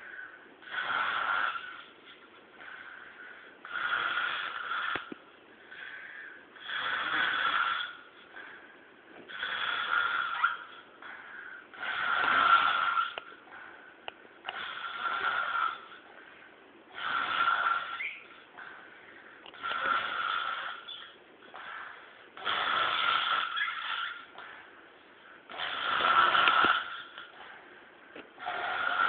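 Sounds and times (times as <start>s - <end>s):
quiet breaths: 0.0s - 29.0s
person snoring: 2.6s - 8.1s, 9.3s - 13.3s, 14.4s - 16.1s, 16.9s - 18.9s, 25.5s - 27.6s, 28.4s - 29.0s.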